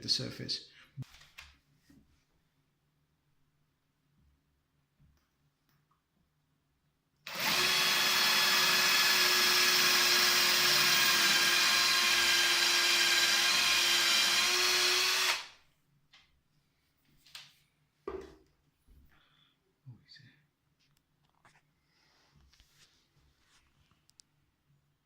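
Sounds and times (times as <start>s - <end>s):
power drill drilling into tile: 7.3s - 15.5s.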